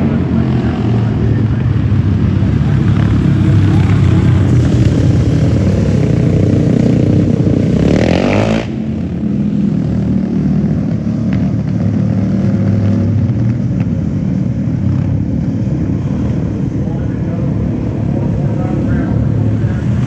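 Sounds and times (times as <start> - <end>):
engine running and revving: 0.0 - 20.0.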